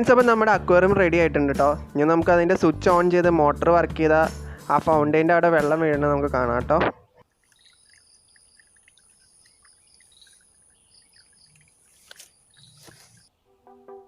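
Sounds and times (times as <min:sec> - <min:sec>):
water dripping and trickling: 0:05.4 - 0:13.3.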